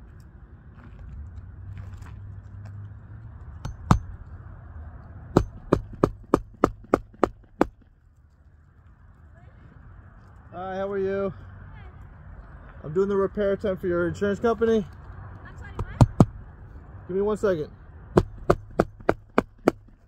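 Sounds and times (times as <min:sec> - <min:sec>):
hammer striking shingle roof: 0:03.6 - 0:04.2, 0:05.3 - 0:07.9, 0:15.8 - 0:16.4, 0:18.1 - 0:20.0.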